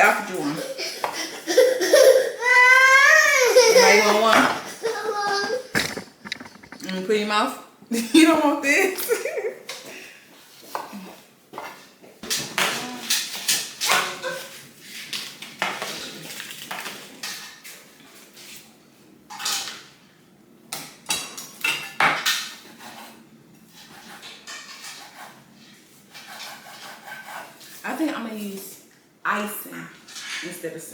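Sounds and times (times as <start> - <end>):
dishes and cutlery clattering: 3.8 - 7.1, 30.1 - 30.6.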